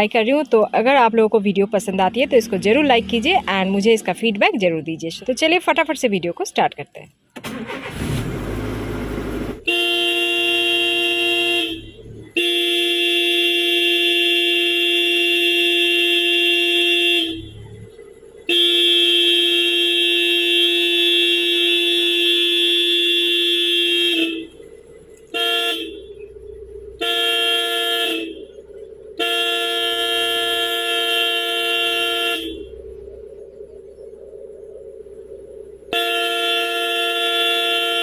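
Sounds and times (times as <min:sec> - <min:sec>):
car horn honking: 0:07.5 - 0:08.0, 0:09.5 - 0:33.0, 0:35.9 - 0:38.0.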